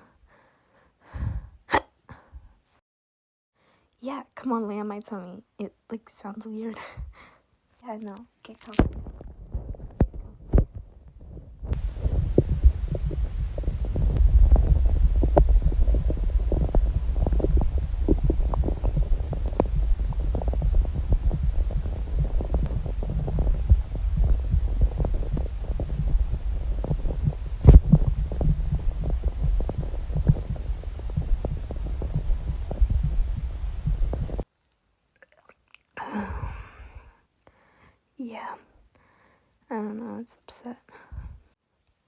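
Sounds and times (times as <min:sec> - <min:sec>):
stomach gurgling: 0:08.6 - 0:34.4, 0:35.2 - 0:37.0.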